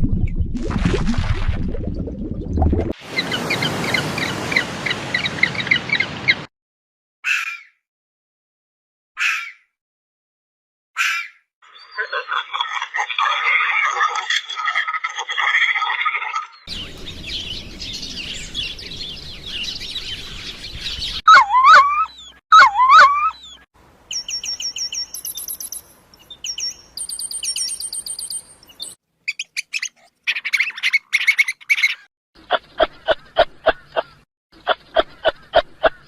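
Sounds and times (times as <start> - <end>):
high bird chirps: 16.5 - 35.6.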